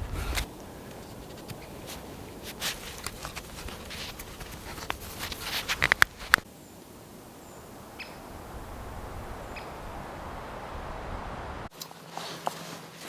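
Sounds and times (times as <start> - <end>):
scraping strokes on wood: 0.0 - 6.5
sharp clicks: 4.2 - 6.5
bird chirps: 7.4 - 10.8.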